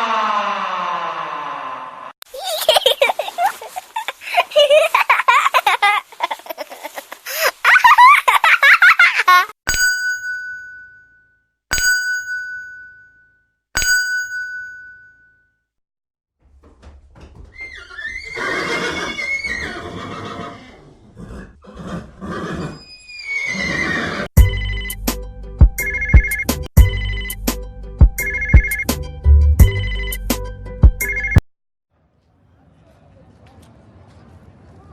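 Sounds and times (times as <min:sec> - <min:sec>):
bell ringing in bursts: 0:09.7 - 0:15.3
bell-like dings: 0:09.7 - 0:15.6.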